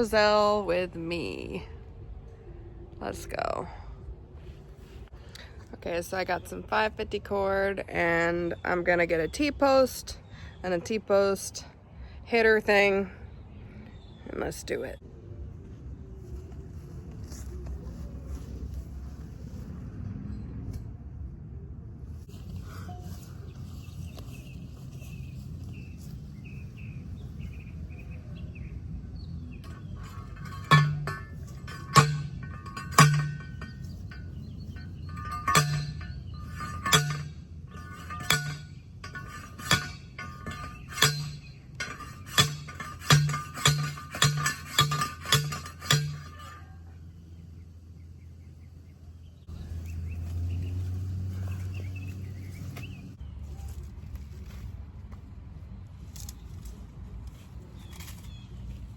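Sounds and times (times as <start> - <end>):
birds chirping: 13.2 - 15.0, 22.5 - 53.7
post driver clanging on steel post: 29.6 - 46.9.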